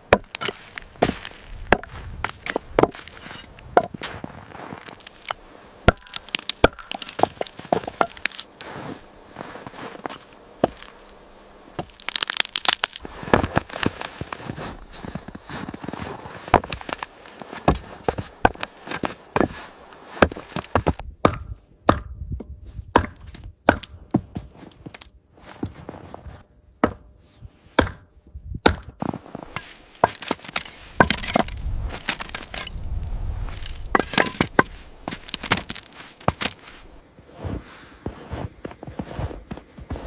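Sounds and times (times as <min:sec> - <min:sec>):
sharp cracks and knocks: 0:04.8 - 0:08.5, 0:11.8 - 0:14.4, 0:28.6 - 0:36.9.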